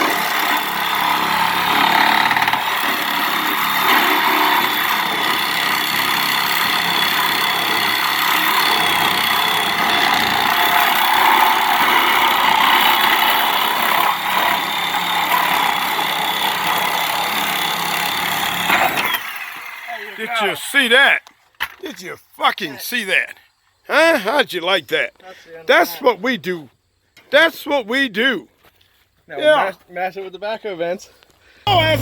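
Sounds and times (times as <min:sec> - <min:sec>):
hydraulic whine: 0:00.0 - 0:20.1
diesel engine working hard: 0:31.7 - 0:32.0.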